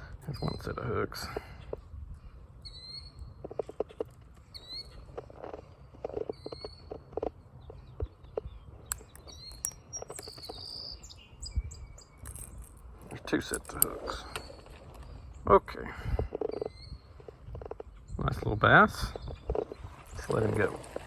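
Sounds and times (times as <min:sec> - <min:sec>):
bird chirping: 0:00.0 - 0:21.0
clicks and rustles of fishing hooks: 0:03.5 - 0:10.7, 0:12.0 - 0:15.3.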